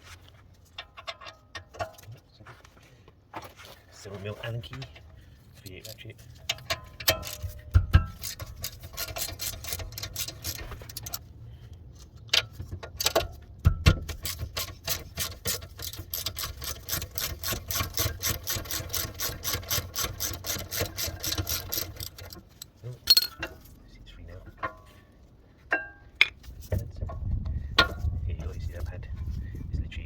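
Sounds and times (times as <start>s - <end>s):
metal knocks: 6.5s - 11.2s
ratchet clicking: 6.5s - 11.2s, 14.0s - 23.4s.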